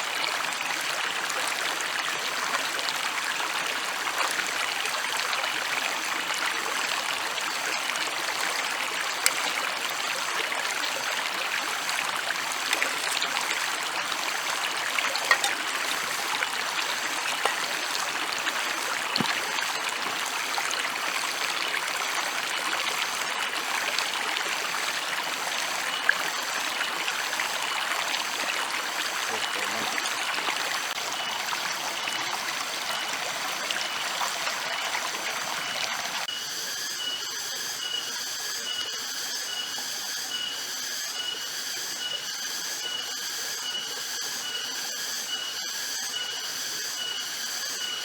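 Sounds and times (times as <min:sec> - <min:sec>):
stream water rushing: 0:00.0 - 0:36.3.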